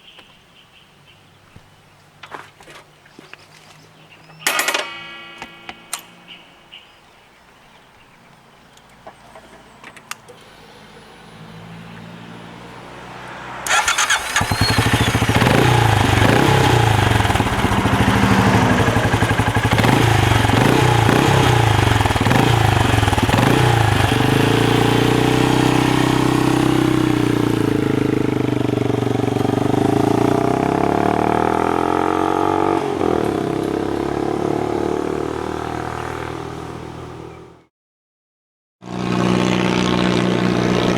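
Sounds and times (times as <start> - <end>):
motorcycle engine starting and revving: 10.0 - 37.6, 38.8 - 40.9.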